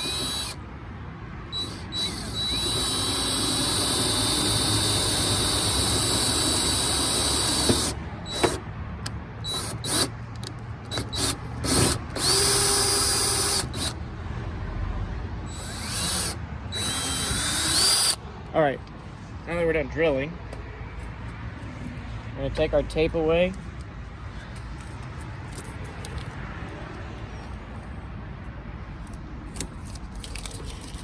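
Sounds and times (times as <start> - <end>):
power drill boring: 0.0 - 0.6, 1.5 - 8.6, 9.4 - 10.1, 10.9 - 14.0, 15.5 - 18.2.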